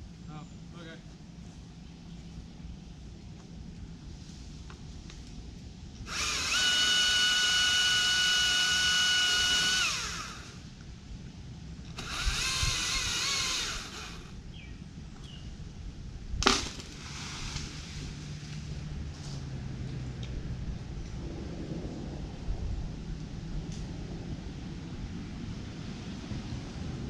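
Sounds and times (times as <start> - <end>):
battery chainsaw whining: 6.1 - 10.6, 11.9 - 14.4.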